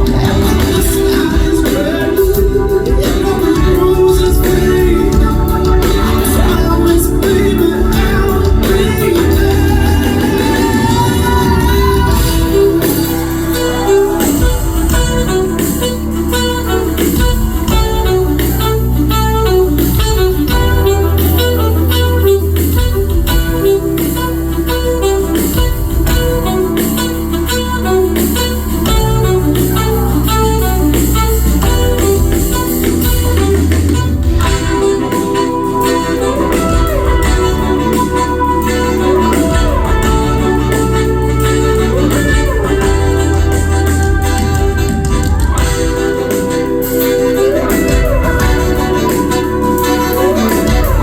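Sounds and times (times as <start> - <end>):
electric guitar: 0.0 - 51.0
live band instrumental: 0.0 - 51.0.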